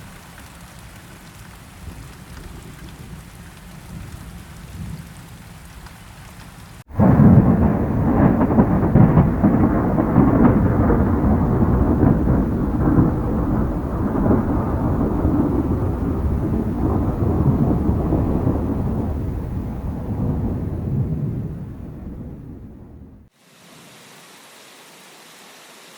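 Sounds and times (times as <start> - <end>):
rain hissing: 0.0 - 25.9
thunder rolling: 6.9 - 23.3.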